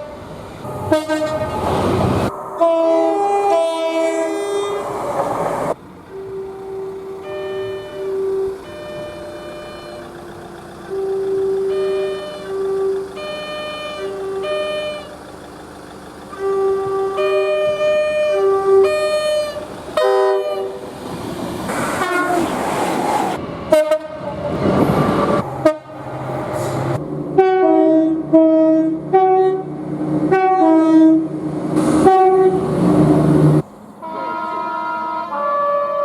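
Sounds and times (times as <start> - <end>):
two-tone train horn blasts: 0.0 - 5.0, 6.1 - 10.2, 10.9 - 15.1, 16.3 - 20.9, 22.0 - 22.6, 23.7 - 24.7, 25.6 - 26.8, 27.4 - 31.3, 32.0 - 32.7, 34.0 - 36.0
train passing at speed: 0.0 - 36.0
low engine drone: 0.6 - 20.7, 24.5 - 34.2.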